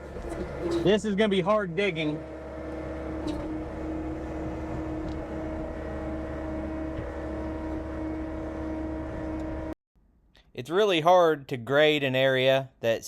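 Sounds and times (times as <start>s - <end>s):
diesel engine running steadily: 0.0s - 9.8s.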